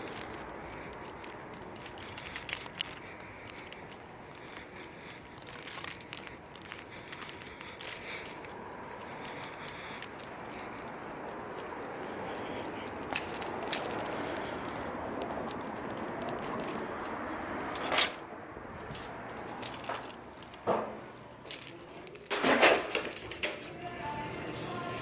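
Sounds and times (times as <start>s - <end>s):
clicks and rattles: 19.6s - 23.7s.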